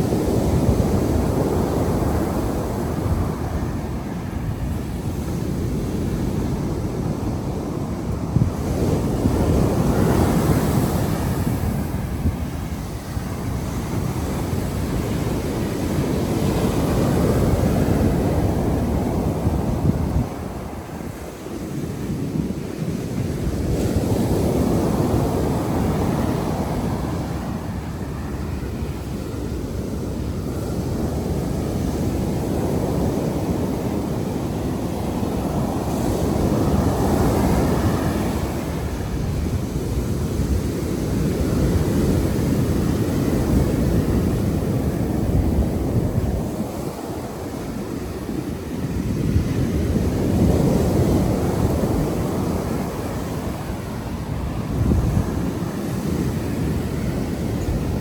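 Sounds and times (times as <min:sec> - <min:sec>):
surf washing onto beach: 0:00.0 - 0:58.0
wind buffeting microphone: 0:00.0 - 0:58.0.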